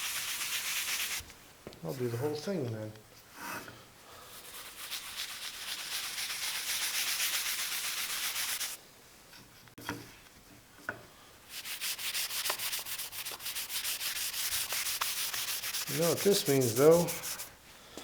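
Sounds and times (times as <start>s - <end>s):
wax rubbing on wood: 0.0s - 1.2s, 11.5s - 17.5s.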